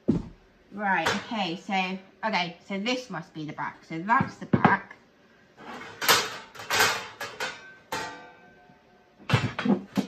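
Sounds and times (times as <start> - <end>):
panels rustling and scraping: 5.6 - 8.4.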